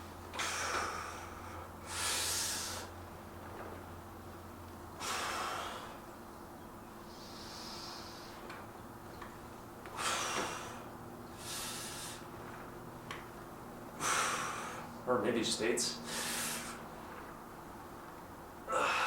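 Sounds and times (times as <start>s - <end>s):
steady low hum: 0.0s - 19.0s
man breathing heavily: 0.3s - 3.2s, 4.9s - 6.2s, 7.0s - 8.7s, 9.8s - 12.7s, 13.9s - 15.1s, 16.0s - 17.4s, 18.6s - 19.0s.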